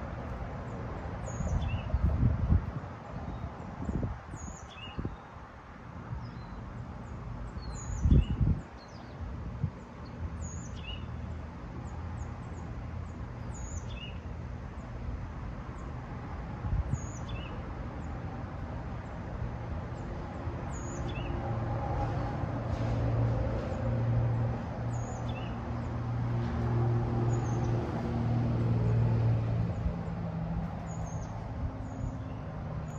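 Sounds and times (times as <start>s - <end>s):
bird chirping: 0.6s - 2.1s, 4.3s - 5.3s, 6.2s - 9.2s, 9.8s - 15.0s, 16.9s - 18.2s, 20.7s - 21.4s, 24.9s - 25.9s, 30.7s - 32.9s.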